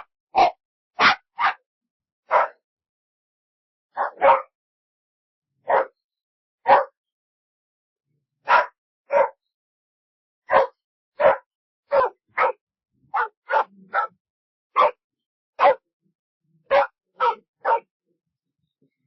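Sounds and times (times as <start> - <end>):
dog barking: 0.0 - 1.6, 2.3 - 2.6, 3.9 - 4.6, 5.6 - 6.0, 6.6 - 7.0, 8.4 - 9.5, 10.5 - 15.0, 15.6 - 15.8, 16.6 - 17.9.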